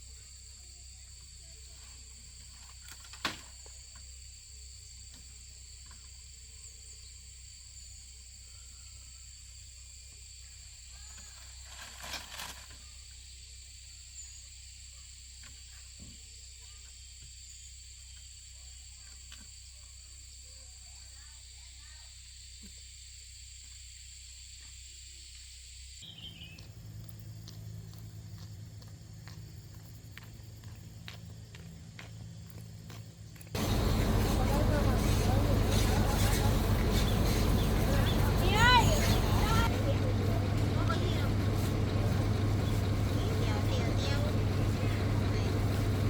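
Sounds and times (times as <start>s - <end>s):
high-pitched insect chorus: 0.0s - 46.0s.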